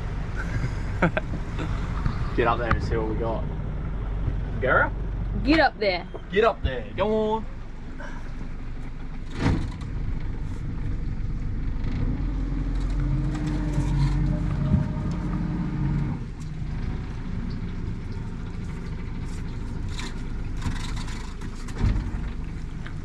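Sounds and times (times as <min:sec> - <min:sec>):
outboard motor humming: 0:00.0 - 0:23.0
knocks and water splashes: 0:16.3 - 0:23.0.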